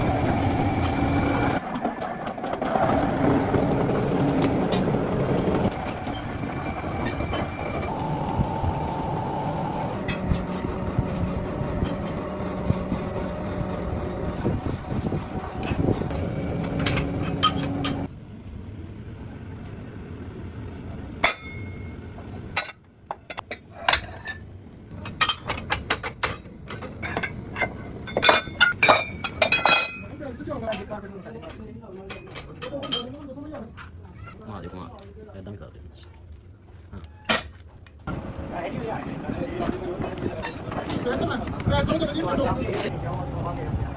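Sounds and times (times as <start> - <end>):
workshop machinery running: 0.0 - 18.2, 38.1 - 43.9.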